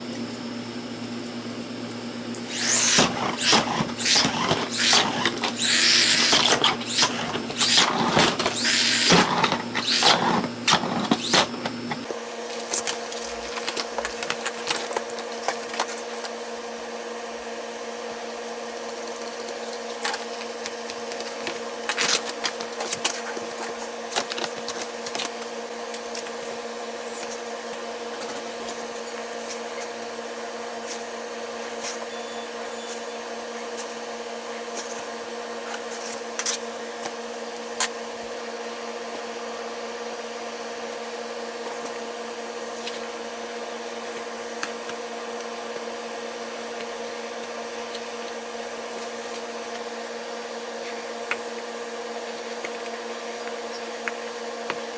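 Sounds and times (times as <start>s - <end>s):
toy motor whining: 2.5s - 12.1s.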